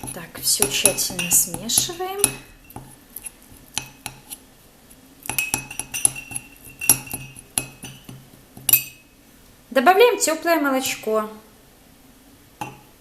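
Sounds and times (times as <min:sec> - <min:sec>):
teaspoon clinking in a cup: 0:00.0 - 0:02.9, 0:05.3 - 0:09.0.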